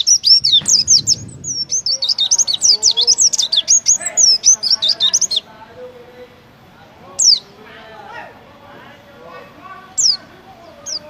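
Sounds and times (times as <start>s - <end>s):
white-eye bird singing: 0.0s - 5.5s, 7.1s - 7.7s, 9.6s - 11.0s.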